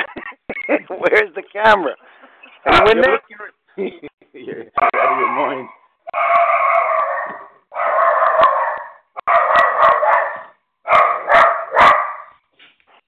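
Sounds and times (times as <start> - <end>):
dog barking: 4.8 - 12.4.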